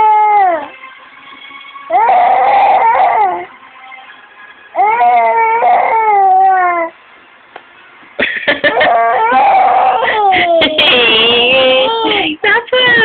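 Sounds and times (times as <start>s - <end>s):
young child whining cries: 0.0s - 0.7s, 1.9s - 3.5s, 4.8s - 7.0s, 8.6s - 12.2s.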